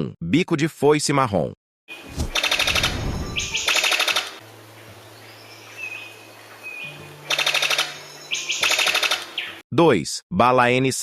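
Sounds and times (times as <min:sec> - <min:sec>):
bird rattling call of sharp clicks: 0:03.7 - 0:04.3, 0:07.3 - 0:08.0, 0:08.6 - 0:09.4.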